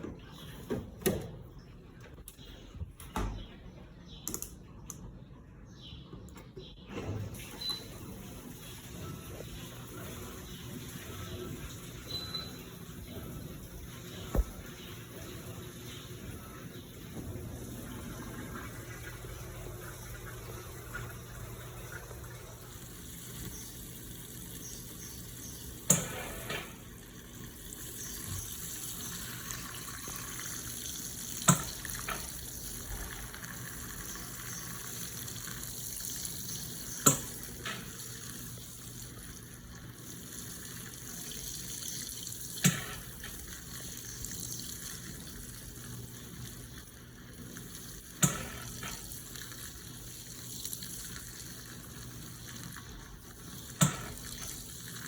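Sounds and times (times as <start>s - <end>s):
water rushing into washing machine: 6.9s - 55.0s.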